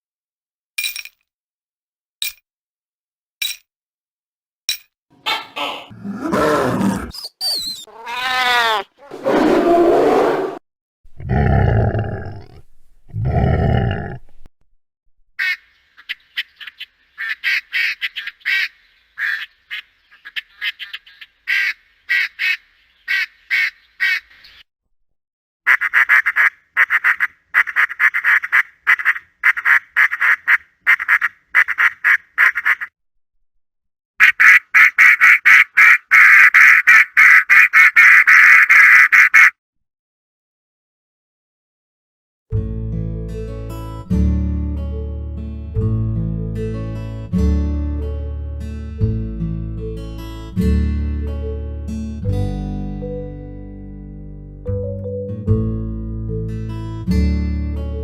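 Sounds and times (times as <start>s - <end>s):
ducks quacking: 5.2s - 6.0s, 15.4s - 24.5s, 25.7s - 32.9s, 34.2s - 39.5s
animal call falling in pitch: 7.9s - 10.6s.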